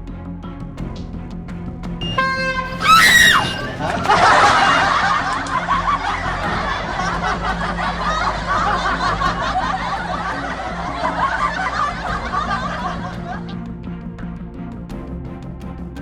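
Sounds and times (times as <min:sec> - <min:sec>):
background music: 0:00.0 - 0:16.0
crowd laughing: 0:02.0 - 0:13.7.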